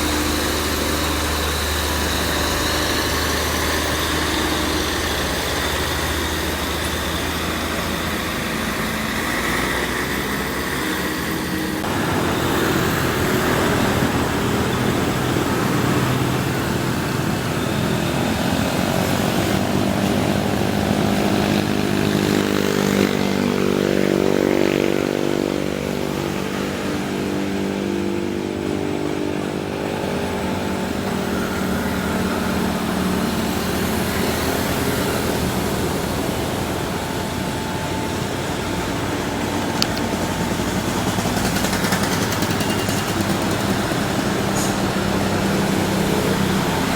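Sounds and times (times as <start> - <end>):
diesel truck engine: 0.0 - 46.9.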